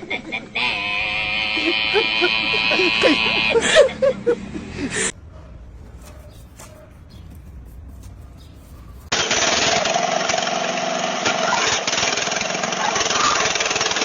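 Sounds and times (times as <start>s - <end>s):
construction machine noise: 0.0s - 5.1s, 9.1s - 14.0s.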